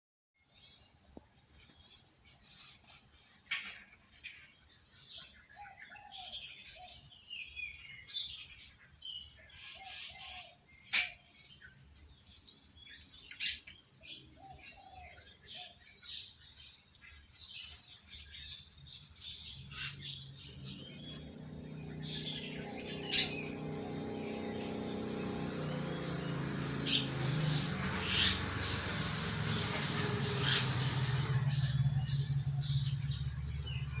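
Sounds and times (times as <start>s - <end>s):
insects chirring: 0.4s - 34.0s
low steady hum: 20.2s - 34.0s.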